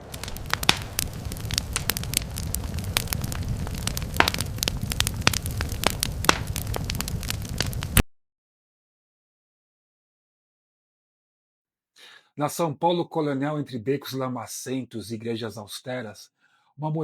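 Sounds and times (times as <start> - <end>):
steady low rumble: 0.0 - 8.0
fire crackling and popping: 0.0 - 8.1.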